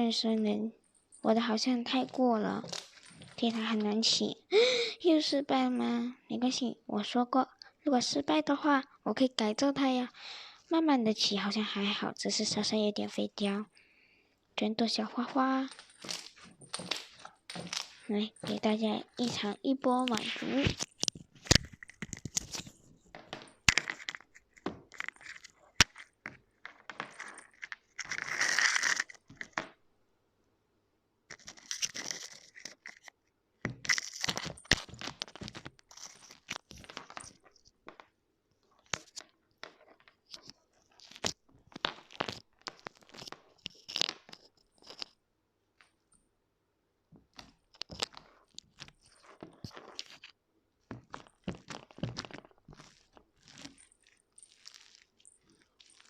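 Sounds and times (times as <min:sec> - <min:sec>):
slime crackling and popping: 0:51.1 - 0:56.0.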